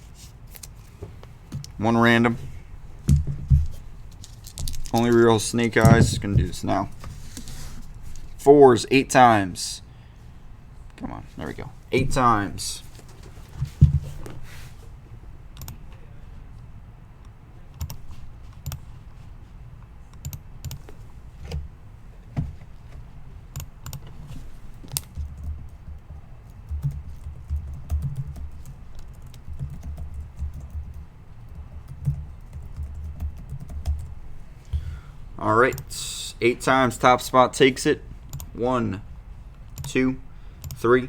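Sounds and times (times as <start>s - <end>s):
soft thumps on desk: 5.8s - 7.2s, 13.6s - 14.4s
computer keyboard and mouse clicking: 15.6s - 15.8s, 17.8s - 18.8s, 20.1s - 21.0s, 23.5s - 24.1s, 24.8s - 34.1s, 38.3s - 38.5s, 39.7s - 40.0s, 40.6s - 40.8s.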